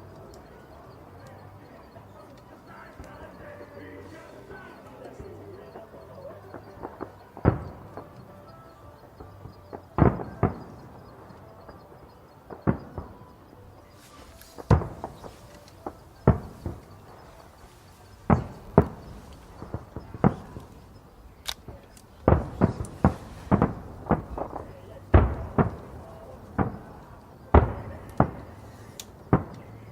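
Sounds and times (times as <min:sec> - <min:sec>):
fireworks booming: 0:00.0 - 0:29.9.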